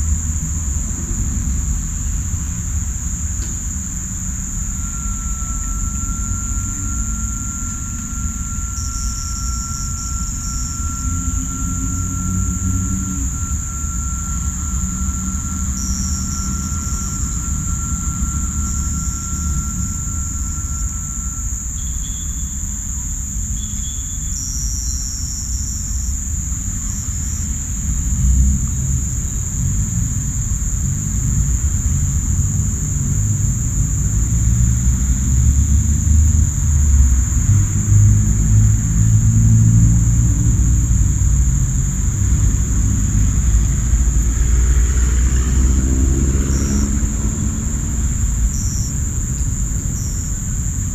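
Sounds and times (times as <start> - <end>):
loud low rumble: 0.0 - 23.4
crickets and cicadas chorus: 0.0 - 50.9.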